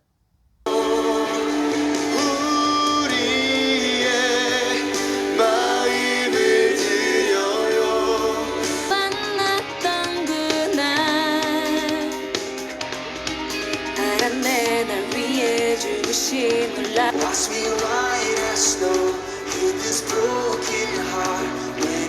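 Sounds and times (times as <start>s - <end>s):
gospel song with woman singing: 0.7s - 12.6s, 13.8s - 22.0s.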